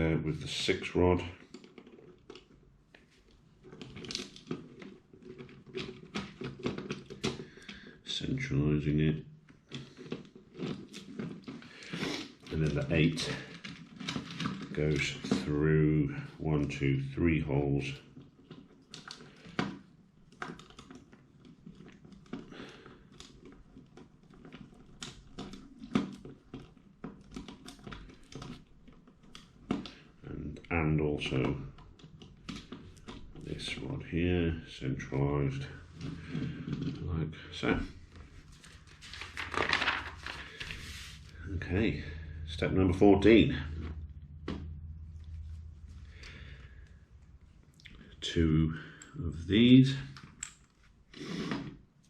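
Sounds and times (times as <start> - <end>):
plastic parts clicking and rattling: 0.6 - 8.4, 9.4 - 16.8, 18.0 - 48.2, 49.9 - 52.0
plastic parts clicking and tapping: 1.4 - 8.0.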